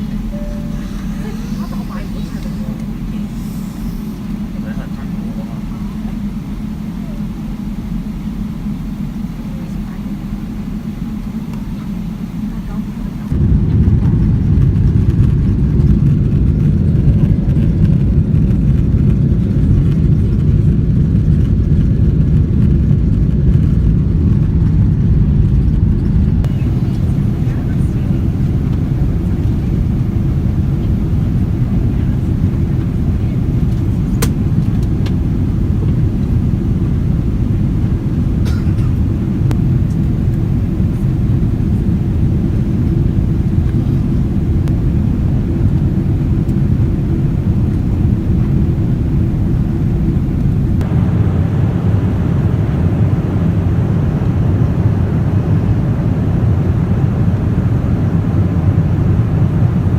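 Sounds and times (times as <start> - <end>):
airplane cabin engine rumble: 0.0 - 59.9.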